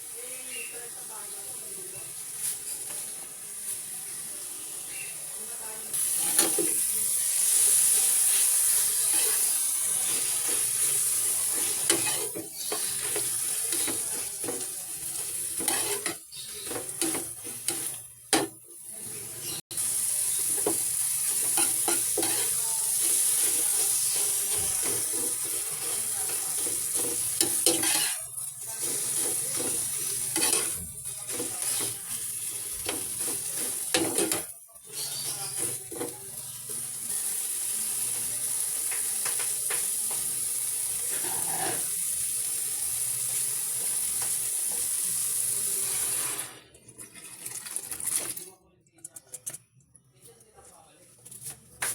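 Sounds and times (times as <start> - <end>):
food sizzling in a pan: 0.0 - 48.5
utensil scraping a pan: 8.3 - 18.5, 20.3 - 32.1, 41.1 - 41.9.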